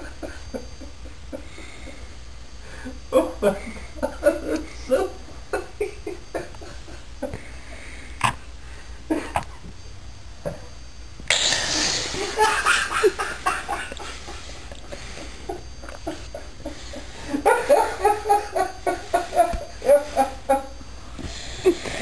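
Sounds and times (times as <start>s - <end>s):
people laughing: 3.2s - 7.5s, 11.9s - 20.8s.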